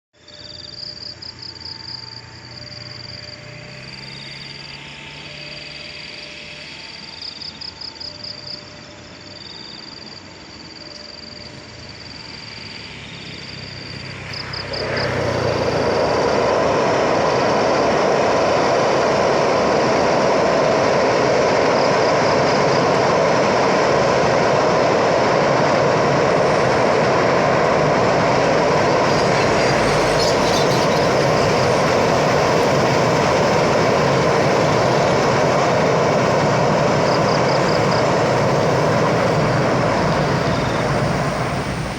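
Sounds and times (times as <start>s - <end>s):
train wheels rumbling on rails: 0.4s - 41.9s.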